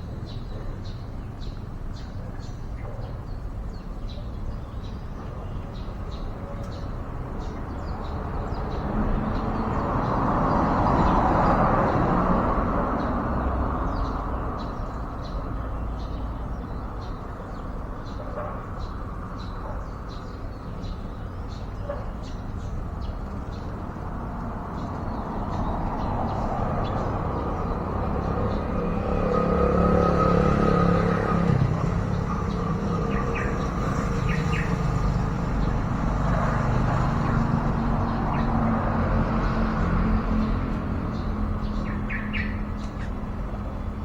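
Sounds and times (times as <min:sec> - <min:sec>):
vehicle passing: 0:07.8 - 0:14.8, 0:22.8 - 0:44.0.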